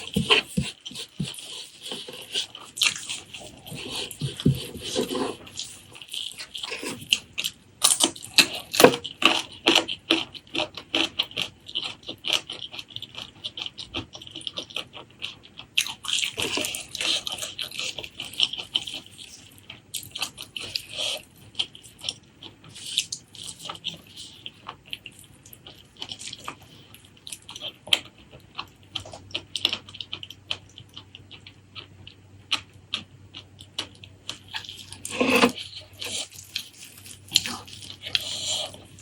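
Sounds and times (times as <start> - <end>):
person chewing food: 0.0 - 39.0.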